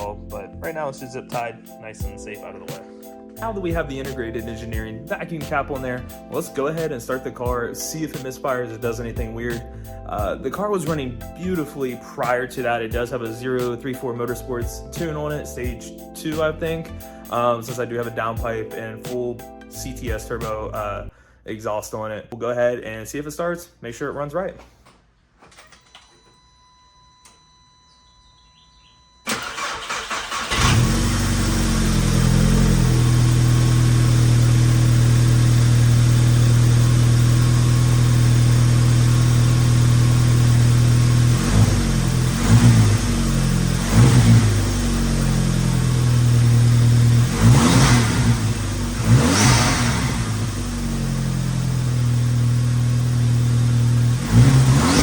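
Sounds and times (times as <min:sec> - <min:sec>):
car engine starting and idling: 0:29.3 - 0:55.0
engine revving: 0:29.3 - 0:55.0.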